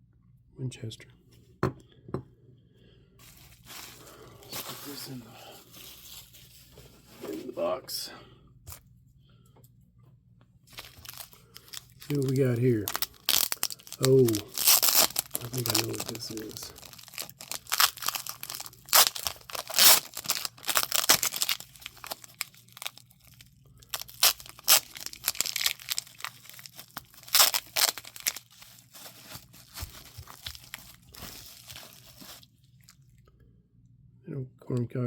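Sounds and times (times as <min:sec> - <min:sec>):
packaging tearing and crumpling: 0:03.2 - 0:07.5, 0:10.7 - 0:33.0.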